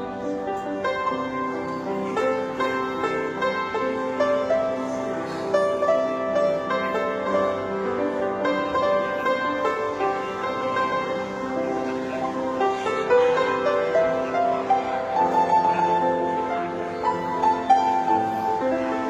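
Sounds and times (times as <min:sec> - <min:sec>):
slow piano melody: 0:00.0 - 0:19.0.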